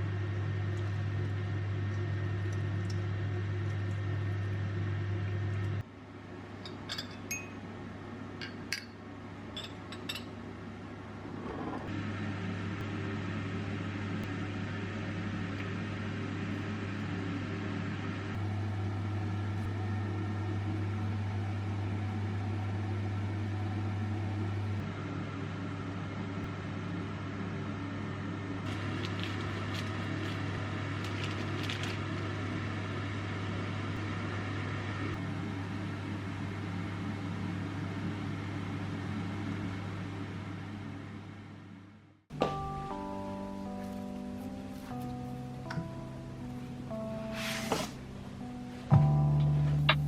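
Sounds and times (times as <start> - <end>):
kitchen appliance humming: 0.0 - 5.8, 9.6 - 41.6.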